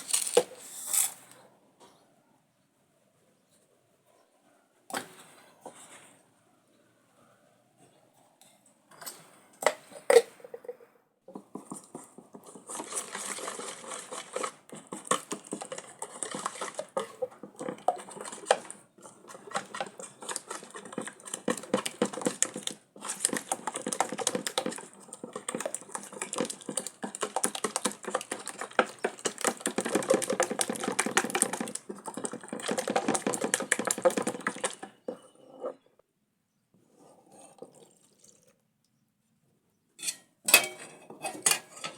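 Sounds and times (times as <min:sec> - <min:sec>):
rustling and crackling handling: 0:00.0 - 0:01.4.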